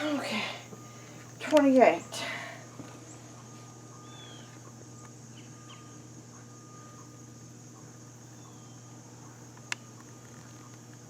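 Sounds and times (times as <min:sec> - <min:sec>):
low background hum: 0:00.0 - 0:11.0.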